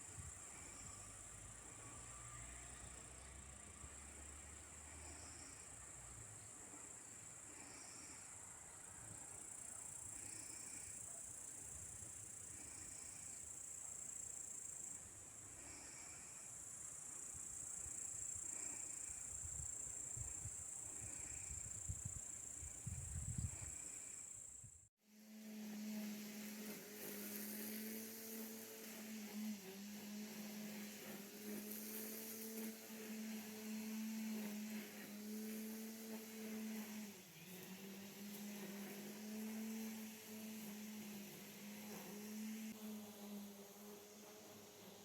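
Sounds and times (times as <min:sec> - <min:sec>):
short faint insect call: 0:00.0 - 0:24.9.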